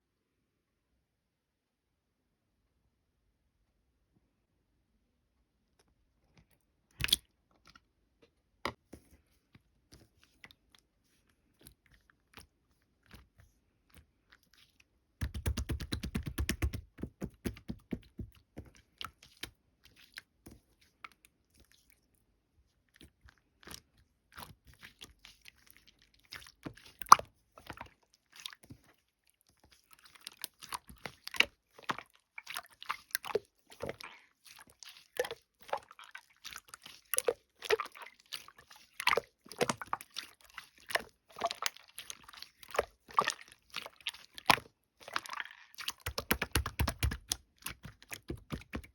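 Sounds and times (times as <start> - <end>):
slime squishing and crackling: 23.0 - 48.9.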